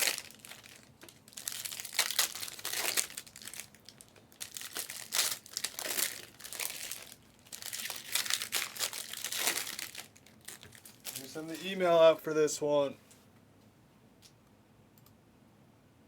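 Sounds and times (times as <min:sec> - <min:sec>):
plastic wrappers crinkling: 0:00.0 - 0:12.0.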